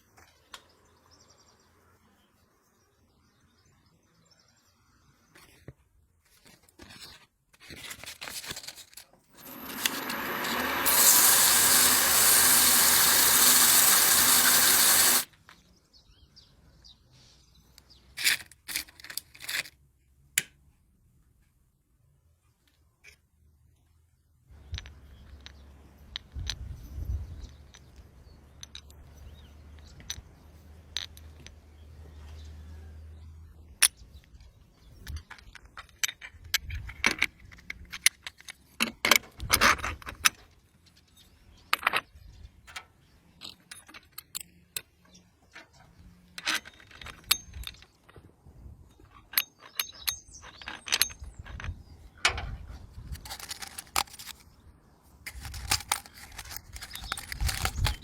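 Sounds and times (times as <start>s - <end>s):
metal parts and tools clinking: 6.8s - 15.3s, 46.4s - 48.2s, 48.9s - 52.4s, 53.0s - 54.5s, 55.3s - 58.0s
metal scrapes: 9.4s - 15.3s.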